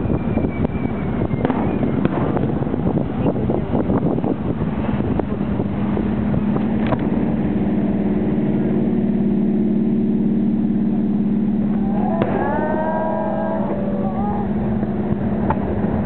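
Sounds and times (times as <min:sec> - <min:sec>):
boat engine drone: 0:00.0 - 0:16.0
fireworks pops: 0:01.3 - 0:03.3, 0:15.4 - 0:15.7
gliding voices: 0:11.6 - 0:15.5.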